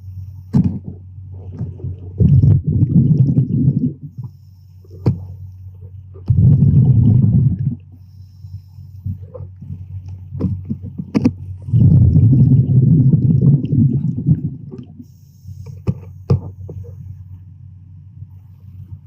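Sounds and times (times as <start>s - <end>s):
underwater gurgling rush: 1.3s - 4.3s, 6.1s - 8.0s, 9.1s - 15.1s.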